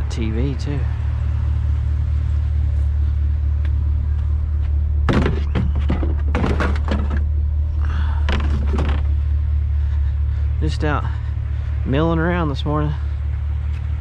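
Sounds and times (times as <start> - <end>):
vehicle engine idling: 0.0 - 14.0
heavy thuds and clunks: 5.0 - 7.4, 8.0 - 9.2.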